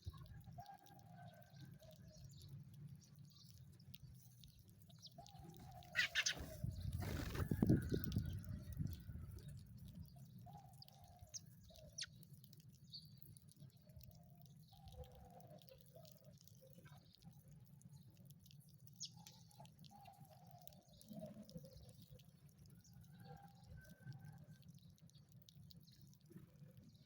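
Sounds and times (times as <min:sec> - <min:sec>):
sparrow chirps: 0:02.0 - 0:13.8, 0:19.0 - 0:22.0.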